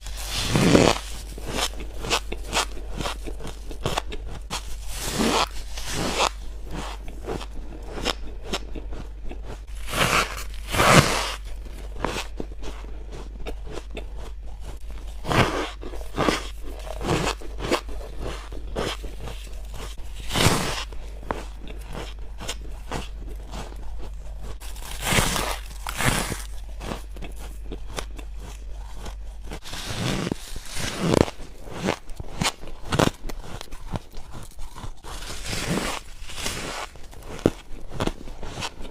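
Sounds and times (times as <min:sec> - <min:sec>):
faint low hum: 0:00.0 - 0:38.9
person crunching frost: 0:00.0 - 0:38.9.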